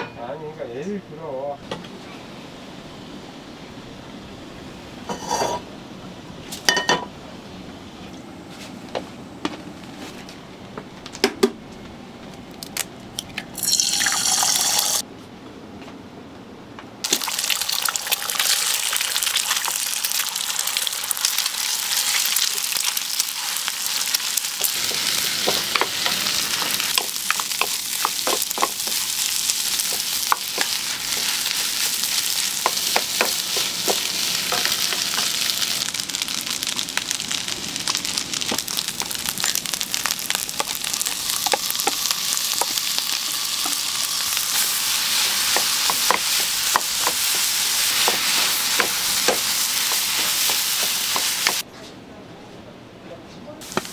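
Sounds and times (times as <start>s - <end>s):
metal spatula scraping a pan: 5.1s - 5.6s
rice sizzling in a hot pan: 13.6s - 15.0s, 17.0s - 51.6s, 53.6s - 53.9s.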